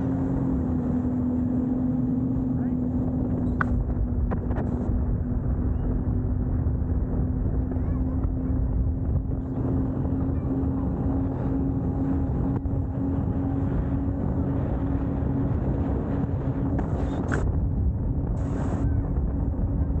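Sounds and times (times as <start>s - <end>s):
engine drone: 0.0s - 20.0s
wind rumbling on microphone: 0.0s - 20.0s.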